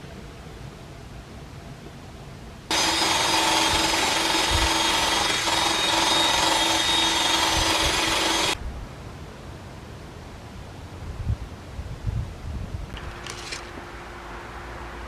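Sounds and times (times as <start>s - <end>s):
power tool abrasive whine: 2.7s - 8.6s.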